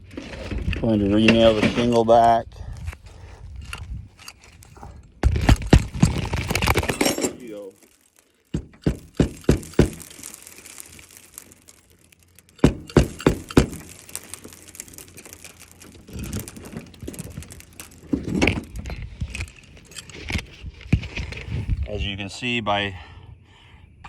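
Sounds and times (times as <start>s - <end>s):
shingle rustling and scraping: 0.0s - 22.6s
hammer striking roofing nails: 8.5s - 10.0s, 12.6s - 14.0s.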